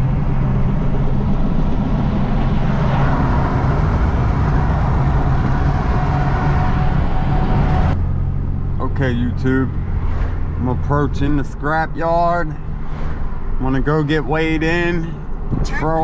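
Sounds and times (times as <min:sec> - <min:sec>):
road noise: 0:00.0 - 0:16.0
truck engine hum: 0:00.0 - 0:16.0.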